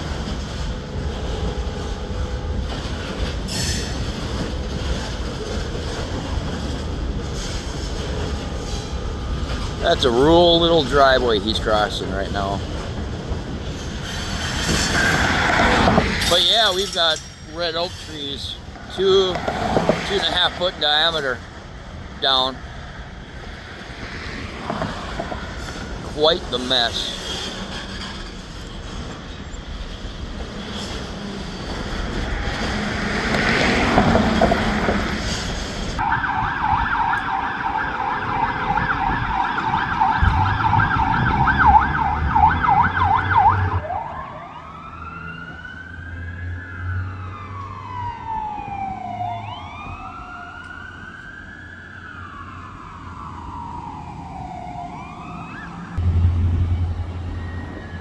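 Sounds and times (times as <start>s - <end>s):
emergency vehicle siren: 8.3s - 12.7s, 14.6s - 21.5s, 23.2s - 27.6s, 36.0s - 58.0s
rushing noise: 13.5s - 28.9s, 55.9s - 58.0s.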